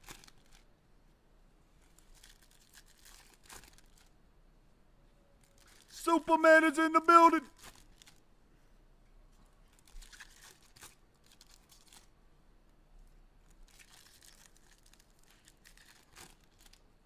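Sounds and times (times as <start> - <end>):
card wrappers crinkling: 1.9 - 4.1, 7.5 - 8.2, 9.8 - 12.1, 13.7 - 16.8.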